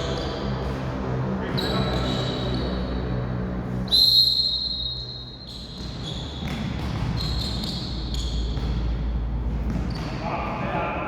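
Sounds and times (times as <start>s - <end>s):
high steady whistle tone: 3.9s - 5.6s
volleyball impacts echoing: 5.7s - 10.9s.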